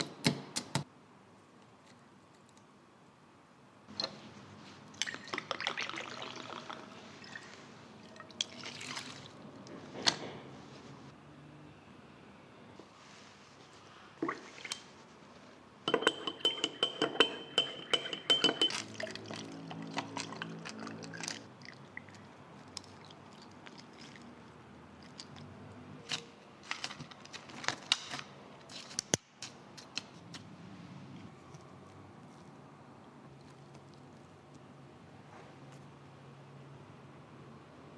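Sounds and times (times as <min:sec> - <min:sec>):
liquid pouring into a cup: 0:05.0 - 0:09.4
glass clinking: 0:15.9 - 0:19.3
glassware and utensils clattering: 0:15.9 - 0:21.4.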